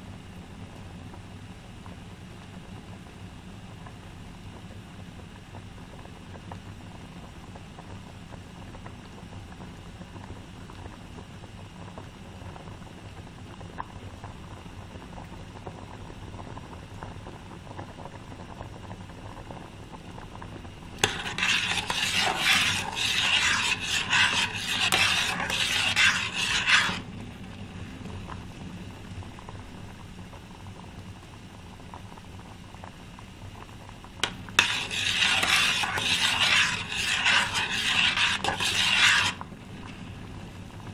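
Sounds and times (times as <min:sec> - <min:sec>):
utensil scraping a pot: 0:21.0 - 0:27.1, 0:34.2 - 0:39.4.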